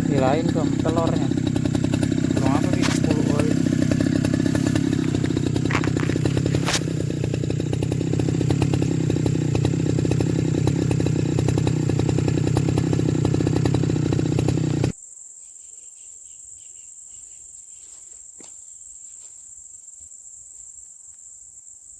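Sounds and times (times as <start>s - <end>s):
lawn mower engine running: 0.0s - 15.0s
insects chirring: 15.0s - 21.9s.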